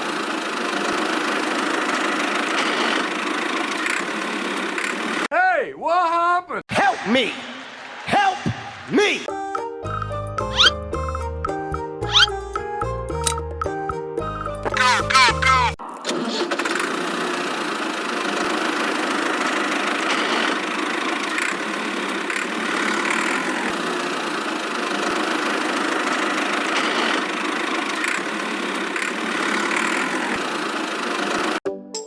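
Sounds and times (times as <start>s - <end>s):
small motor whirring: 16.4s - 31.6s.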